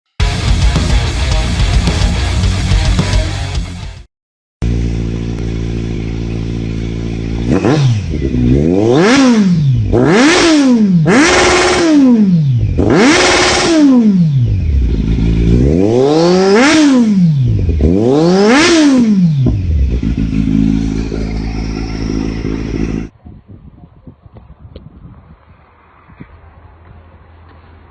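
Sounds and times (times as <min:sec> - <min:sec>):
motorcycle engine idling: 0:04.6 - 0:10.0, 0:14.4 - 0:15.8, 0:17.4 - 0:23.1
engine revving blips: 0:04.6 - 0:23.1.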